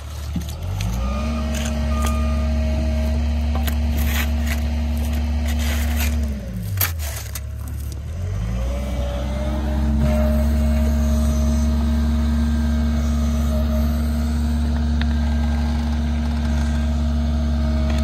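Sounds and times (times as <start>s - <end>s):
clicks and scrapes: 0.0s - 2.2s, 3.5s - 8.1s, 14.7s - 17.2s
diesel engine revving: 0.0s - 18.0s.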